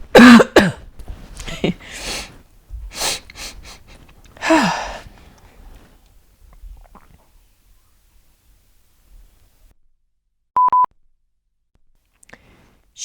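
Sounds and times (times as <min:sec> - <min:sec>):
person coughing and gasping: 0:00.0 - 0:02.4, 0:03.4 - 0:05.1.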